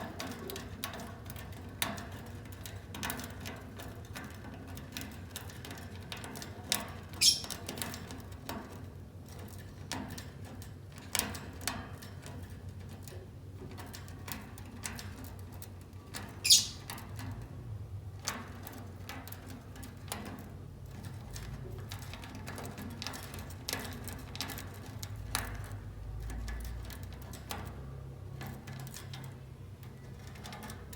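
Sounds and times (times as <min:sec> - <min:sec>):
shrill bird chirps: 0:07.2 - 0:07.6, 0:16.4 - 0:16.9
small clicks taps and scratches: 0:18.2 - 0:30.9.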